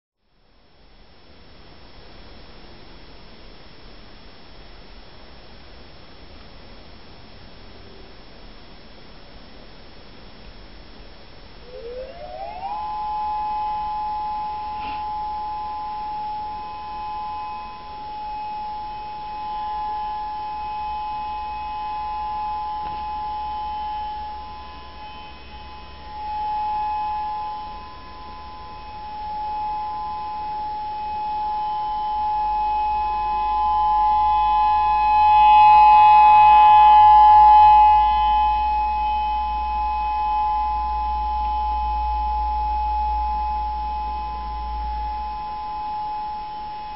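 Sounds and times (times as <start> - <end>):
two-tone warning siren: 11.6 - 46.9.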